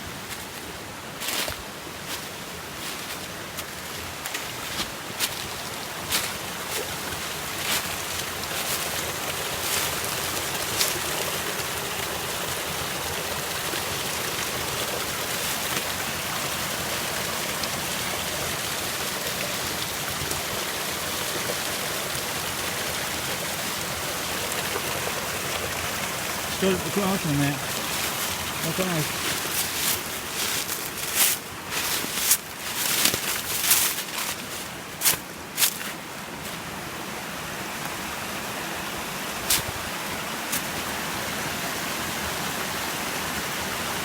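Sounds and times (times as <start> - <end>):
water rushing over waterfall: 4.3 - 35.4.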